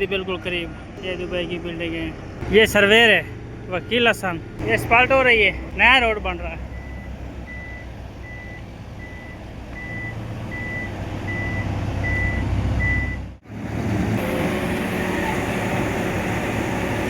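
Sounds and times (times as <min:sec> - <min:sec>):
engine low rumble: 0:00.0 - 0:17.0
machinery drone: 0:02.2 - 0:07.8
reversing alarm beeping: 0:06.6 - 0:13.3.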